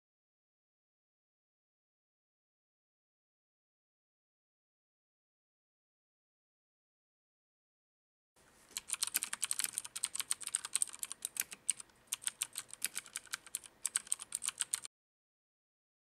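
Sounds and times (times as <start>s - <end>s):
fast typing on mechanical keyboard: 8.7s - 14.9s.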